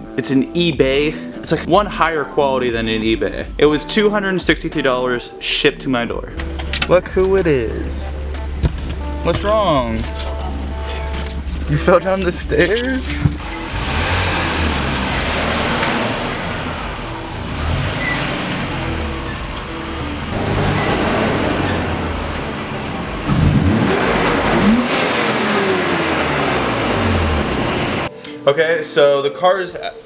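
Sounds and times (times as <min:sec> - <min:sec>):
car engine running: 0:06.4 - 0:28.1.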